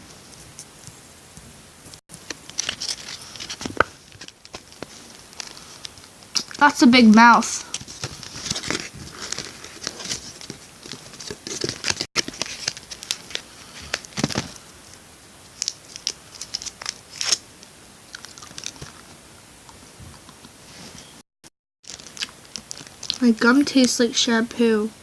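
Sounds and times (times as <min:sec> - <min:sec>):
wrapper rustling: 0:02.2 - 0:17.4, 0:21.8 - 0:23.9
chewing gum: 0:18.1 - 0:20.6.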